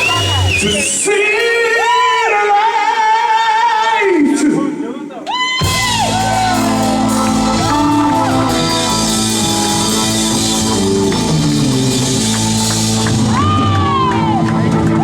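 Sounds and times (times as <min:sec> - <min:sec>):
drum kit with cymbals: 0:05.6 - 0:14.4
electric guitars: 0:05.6 - 0:15.0.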